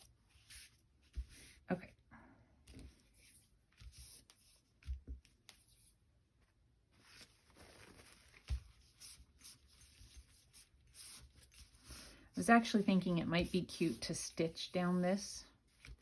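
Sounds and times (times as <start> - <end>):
paper rustling on a table: 2.7 - 14.2, 14.9 - 16.0.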